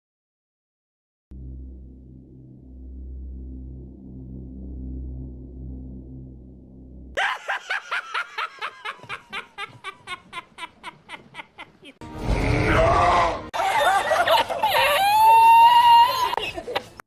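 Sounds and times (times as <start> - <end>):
low steady hum: 1.3 - 7.2
person laughing: 7.2 - 12.0.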